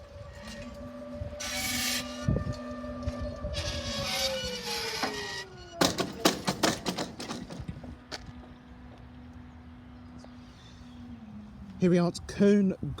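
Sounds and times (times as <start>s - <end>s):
falling whine: 0.0s - 7.0s
steady low hum: 0.0s - 12.3s
train rail noise: 3.9s - 9.4s
sharp clicks and knocks: 5.8s - 7.8s.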